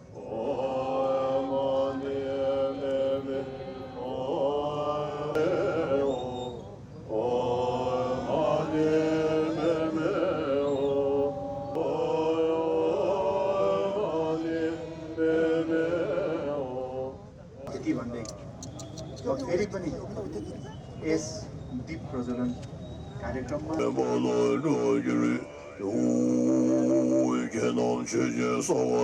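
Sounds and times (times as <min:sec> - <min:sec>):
person chanting long notes: 0:07.2 - 0:17.1, 0:24.0 - 0:29.0.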